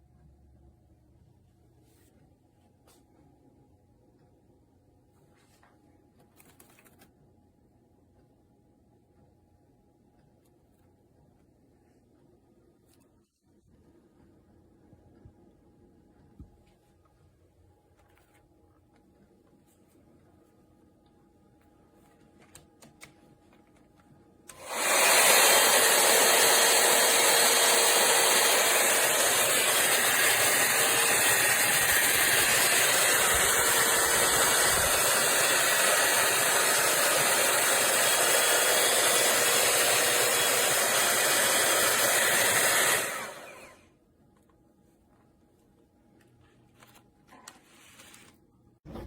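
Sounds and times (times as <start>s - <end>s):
hot-air dryer brush blowing: 24.5s - 43.8s.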